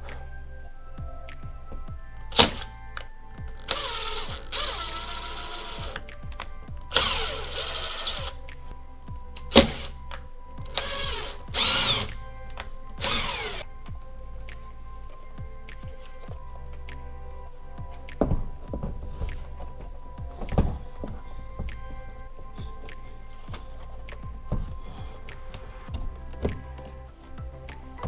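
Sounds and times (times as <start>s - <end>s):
background music: 0.0s - 28.0s
power drill drilling into drywall: 10.8s - 12.2s, 13.0s - 13.6s.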